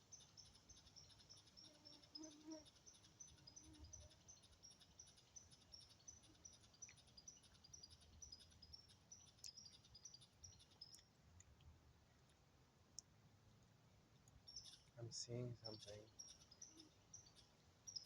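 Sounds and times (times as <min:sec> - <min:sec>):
rapid high-pitched chirping: 0:00.0 - 0:11.1, 0:14.4 - 0:18.0.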